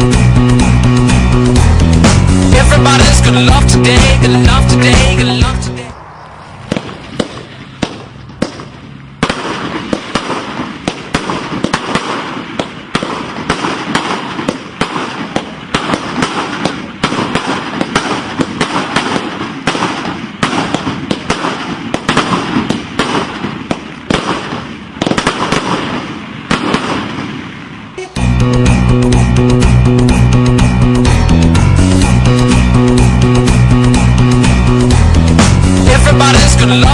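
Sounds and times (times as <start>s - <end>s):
fireworks crackling: 0.6s - 29.3s
fireworks popping: 2.9s - 28.2s.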